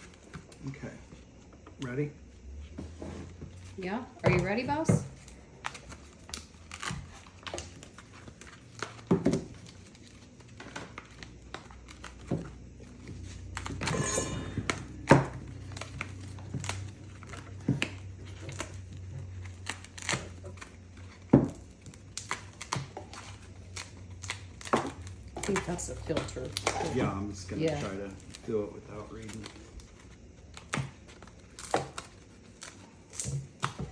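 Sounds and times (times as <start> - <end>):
faint low hum: 0.0 - 33.9
plastic packaging crinkling: 4.4 - 14.1, 15.4 - 33.9.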